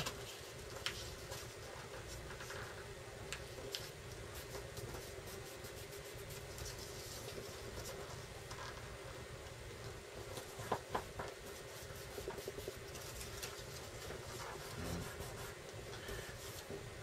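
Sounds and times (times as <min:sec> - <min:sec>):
low room hum: 0:00.0 - 0:17.0
paper rustling and creasing: 0:10.3 - 0:16.8.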